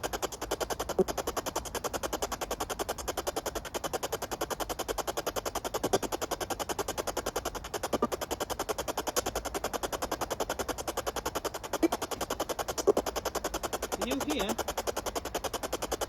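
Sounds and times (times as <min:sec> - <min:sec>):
chopping radio static: 0:11.7 - 0:13.2, 0:13.9 - 0:14.8.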